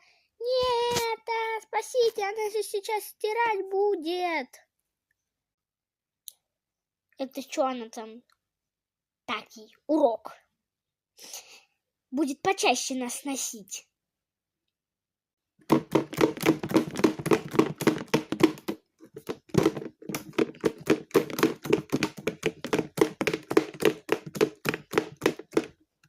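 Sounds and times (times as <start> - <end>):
toys rattling in washing machine drum: 15.7 - 25.7.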